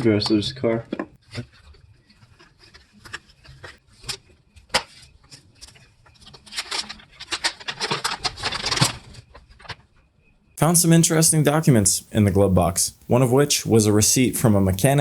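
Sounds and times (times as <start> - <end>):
papers and small objects rustling: 1.2 - 9.9.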